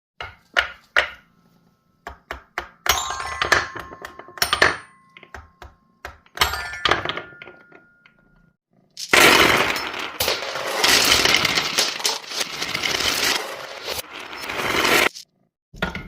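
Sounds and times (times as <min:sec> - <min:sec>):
wooden balls knocking down track: 0:02.1 - 0:08.2, 0:09.0 - 0:14.8
xylophone notes ringing: 0:02.9 - 0:05.4, 0:06.4 - 0:08.2.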